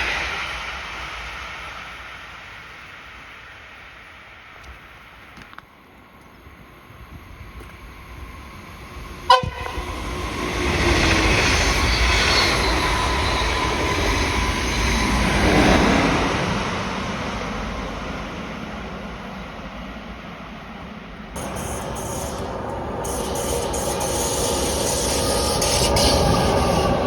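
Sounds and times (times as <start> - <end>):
train rumbling past: 0.0 - 27.0
train horn toot: 9.3 - 10.2.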